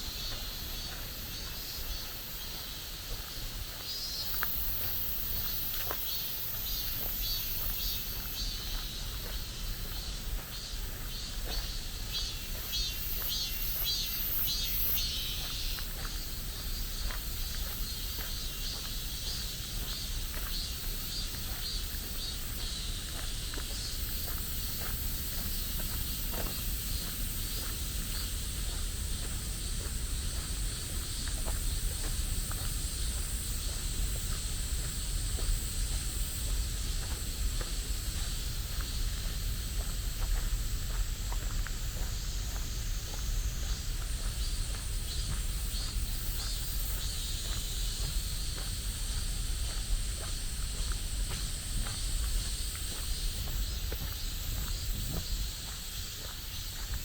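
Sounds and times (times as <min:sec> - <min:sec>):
high-pitched insect drone: 0:00.0 - 0:57.0.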